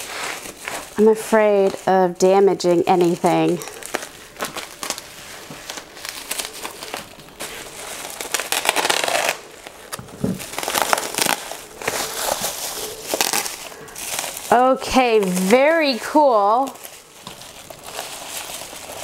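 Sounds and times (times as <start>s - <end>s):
packaging crinkling: 0.0s - 19.0s.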